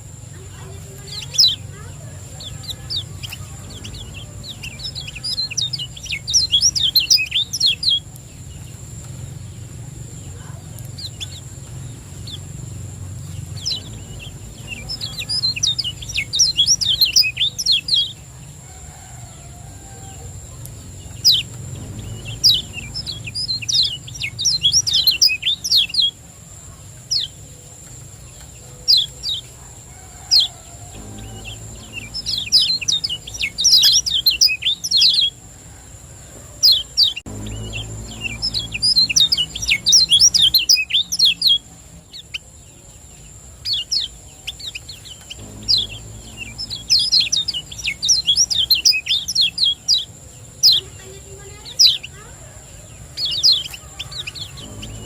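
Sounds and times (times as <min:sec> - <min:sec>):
bird chirping rapidly: 0:00.0 - 0:09.7, 0:10.3 - 0:18.3, 0:20.8 - 0:26.2, 0:30.3 - 0:35.4, 0:36.6 - 0:42.5, 0:43.6 - 0:52.4
low hum: 0:08.2 - 0:18.6, 0:19.6 - 0:27.0, 0:30.4 - 0:35.6, 0:37.2 - 0:42.1, 0:44.6 - 0:50.4, 0:54.3 - 0:55.0
steady high whine: 0:19.6 - 0:27.0, 0:30.3 - 0:35.7, 0:37.0 - 0:42.1, 0:44.6 - 0:50.2, 0:54.2 - 0:55.0.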